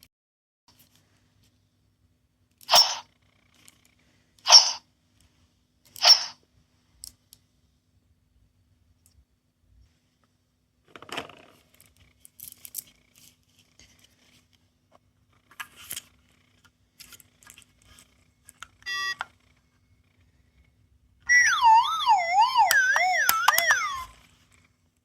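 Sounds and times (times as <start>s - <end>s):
plastic toys clicking and rattling: 21.3s - 24.2s
warbling electronic siren tone: 21.3s - 24.2s.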